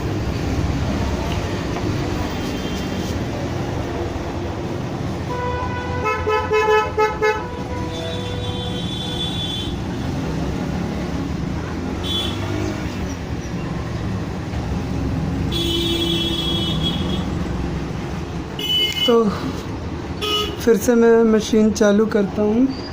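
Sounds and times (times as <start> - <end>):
road traffic: 0.0 - 22.9
vehicle horns honking: 5.3 - 9.9, 12.0 - 12.6, 15.5 - 17.4, 18.6 - 19.2, 20.2 - 20.6.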